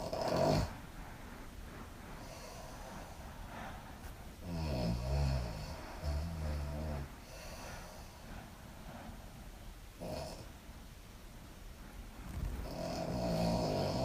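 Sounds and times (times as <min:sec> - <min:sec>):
woman snoring: 0:00.0 - 0:00.7, 0:12.6 - 0:14.0
soft airy breaths: 0:00.0 - 0:14.0.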